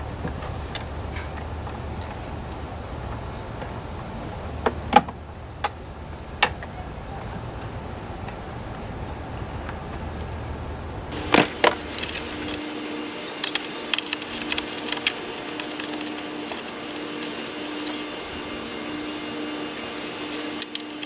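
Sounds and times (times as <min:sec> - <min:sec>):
steady low hum: 0:00.0 - 0:21.0
hand tools clicking and knocking: 0:11.1 - 0:12.7, 0:13.3 - 0:21.0.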